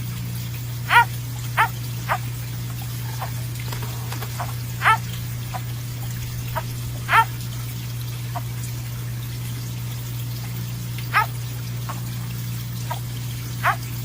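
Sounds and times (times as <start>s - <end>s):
steady low hum: 0.2s - 14.0s
animal giving sharp cries: 0.9s - 2.2s, 2.8s - 7.4s, 11.1s - 11.4s, 13.6s - 13.9s.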